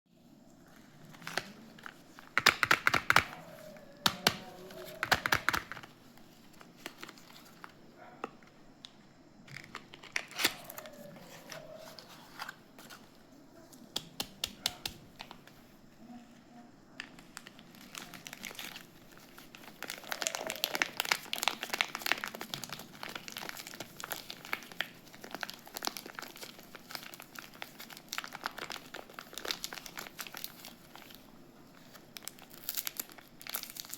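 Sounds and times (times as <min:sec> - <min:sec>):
wrapper crinkling and tearing: 0:00.6 - 0:07.8, 0:09.5 - 0:13.2, 0:17.2 - 0:33.9.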